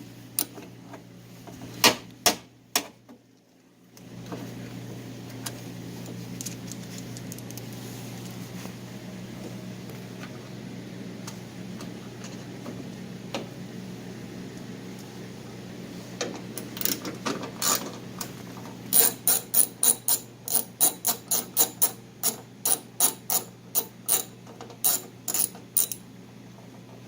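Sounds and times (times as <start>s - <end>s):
ratchet wrench clicking: 18.9s - 26.0s.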